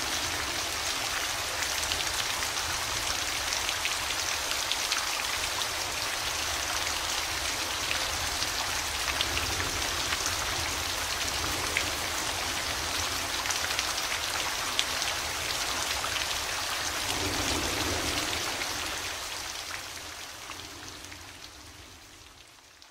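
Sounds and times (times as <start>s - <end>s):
steady falling rain: 0.0s - 22.9s.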